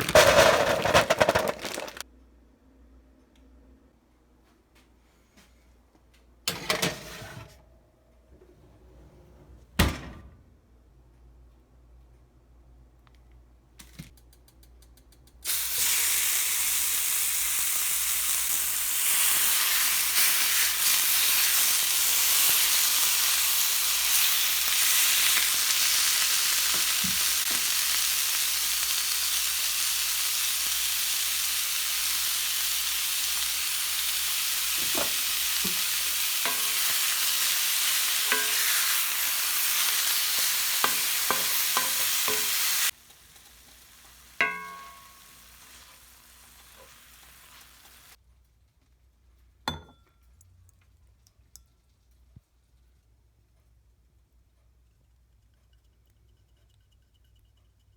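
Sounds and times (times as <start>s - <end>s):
food sizzling in a pan: 15.5s - 48.2s.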